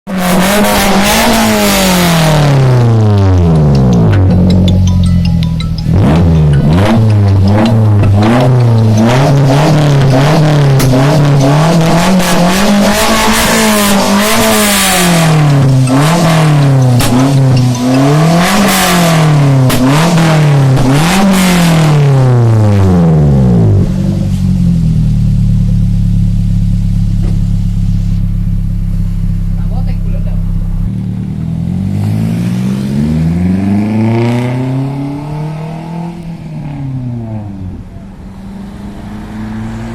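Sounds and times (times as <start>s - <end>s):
engine revving: 0.1s - 4.9s, 5.8s - 39.9s
engine idling: 24.8s - 31.4s.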